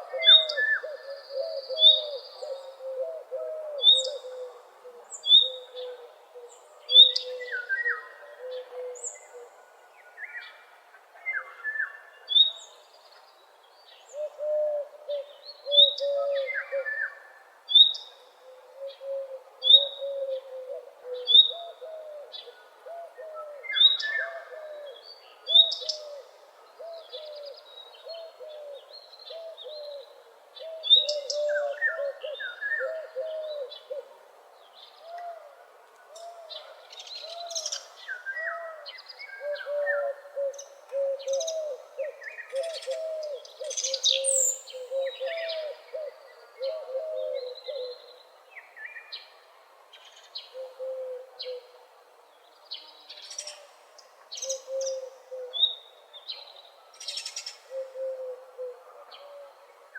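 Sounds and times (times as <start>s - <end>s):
low arching bird calls: 34.8s - 49.0s, 53.2s - 55.9s.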